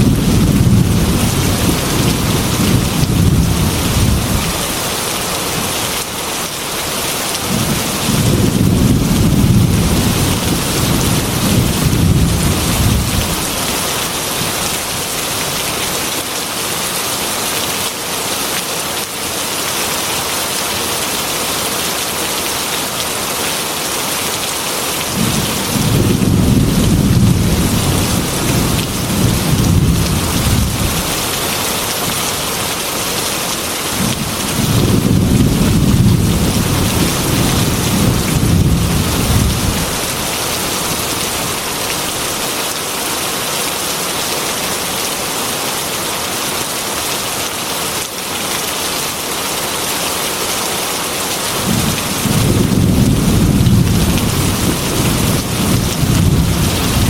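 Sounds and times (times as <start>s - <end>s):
low rolls of thunder: 0.0s - 4.5s, 7.5s - 13.4s, 25.2s - 31.2s, 34.0s - 40.0s, 51.6s - 57.0s
heavy rain on a metal roof: 0.0s - 57.0s.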